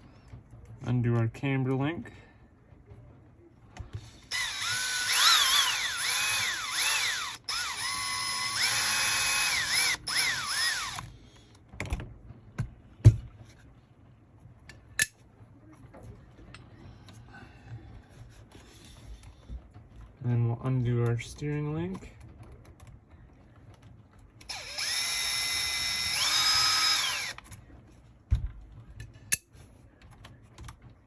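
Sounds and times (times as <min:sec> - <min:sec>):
small parts and tools clicking: 0:03.8 - 0:12.0, 0:21.0 - 0:27.8, 0:28.7 - 0:31.0
electric screwdriver motor whine: 0:04.3 - 0:11.1, 0:24.5 - 0:27.4.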